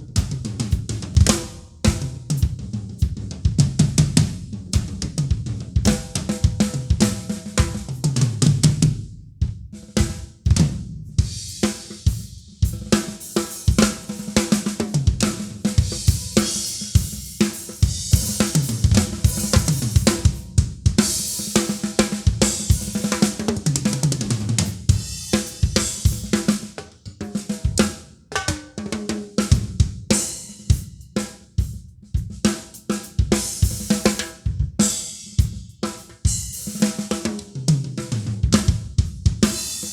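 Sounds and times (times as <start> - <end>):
acoustic drum kit playing: 0.0 - 39.9.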